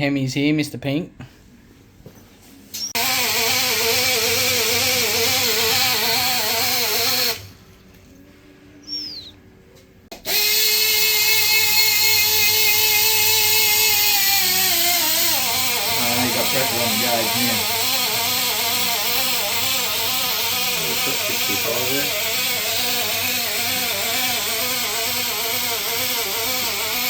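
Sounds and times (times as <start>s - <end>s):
electric drill whining: 2.8s - 7.5s, 10.1s - 27.0s.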